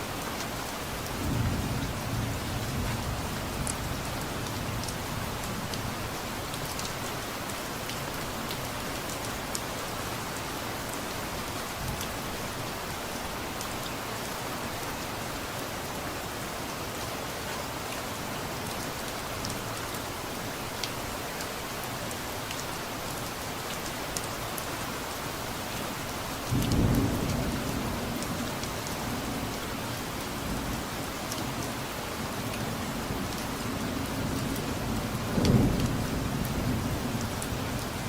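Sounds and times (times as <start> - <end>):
steady rain falling: 0.0 - 38.0.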